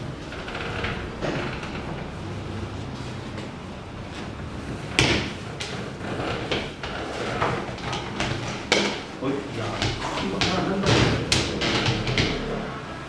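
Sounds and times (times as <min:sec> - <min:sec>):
knocks: 0:04.9 - 0:12.7.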